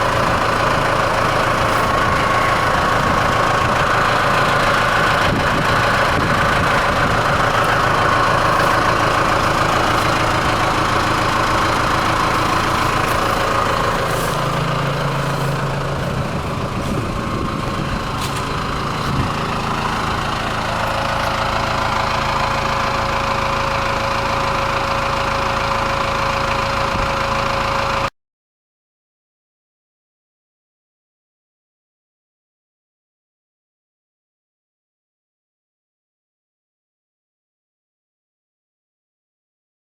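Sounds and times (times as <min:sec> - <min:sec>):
tractor driving wood chipper: 0:00.0 - 0:28.1.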